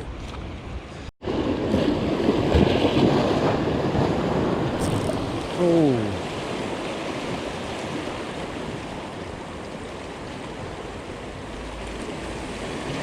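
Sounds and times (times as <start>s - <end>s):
surf washing against rocky shore: 1.2s - 13.0s.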